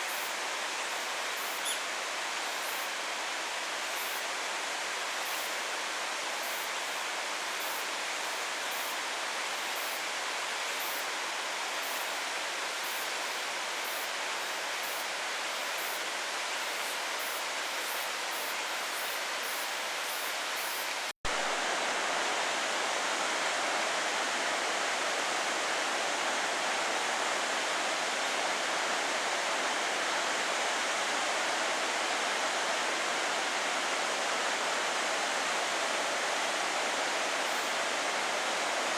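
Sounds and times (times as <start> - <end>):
faint high-pitched chirps: 1.4 - 1.9.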